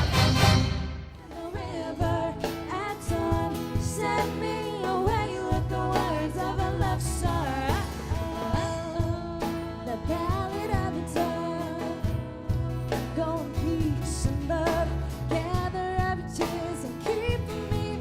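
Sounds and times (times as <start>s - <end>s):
instrumental music with heavy bass: 0.0s - 1.2s
singing voices: 1.2s - 18.0s.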